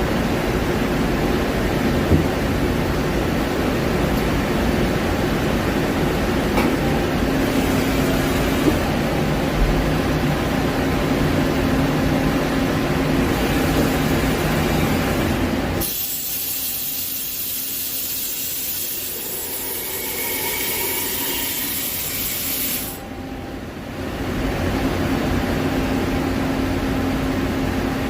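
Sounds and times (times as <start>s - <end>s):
lathe machine hum: 18.5s - 24.7s.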